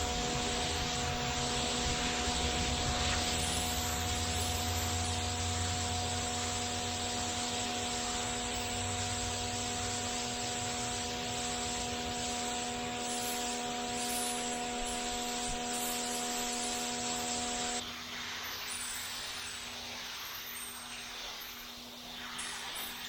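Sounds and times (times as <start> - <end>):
pressure washer motor hum: 0.0 - 17.8
water spray hissing on concrete: 0.0 - 23.0.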